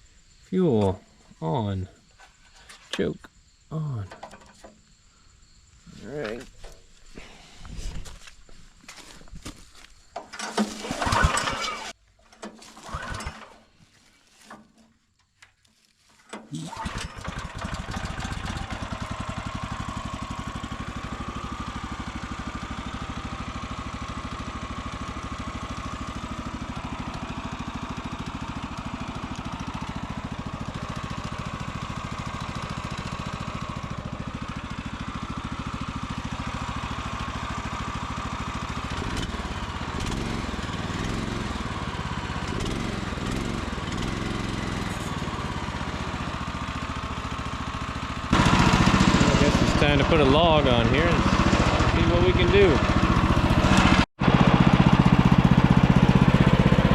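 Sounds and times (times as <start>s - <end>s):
single-cylinder engine running: 10.3s - 13.6s, 16.3s - 56.9s.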